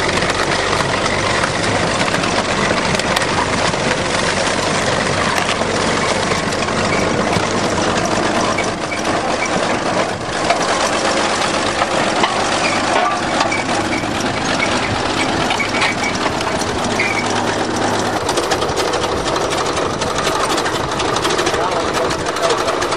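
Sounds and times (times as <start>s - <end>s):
diesel engine running: 0.0s - 22.9s
metallic clicks and squeaks: 8.4s - 10.6s, 12.2s - 22.9s.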